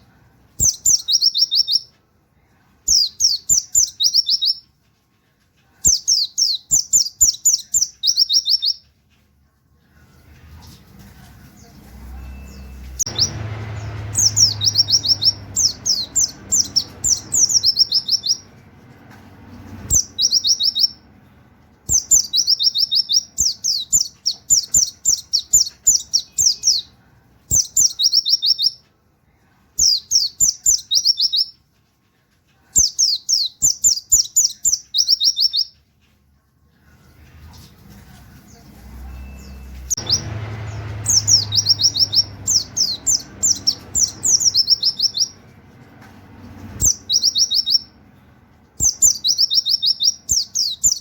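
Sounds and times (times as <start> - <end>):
bird singing high whistled notes: 12.3 - 18.5, 19.9 - 21.0, 21.9 - 26.9, 39.2 - 45.4, 46.8 - 47.9, 48.8 - 51.0.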